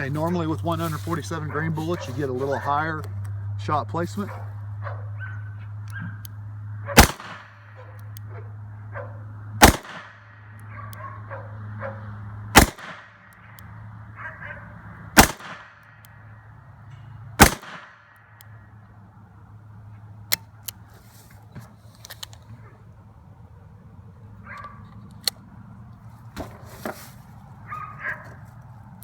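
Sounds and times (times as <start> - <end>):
revolver shots with echo: 7.0 - 7.6, 9.6 - 10.2, 12.6 - 13.1, 15.2 - 15.8, 17.4 - 18.0.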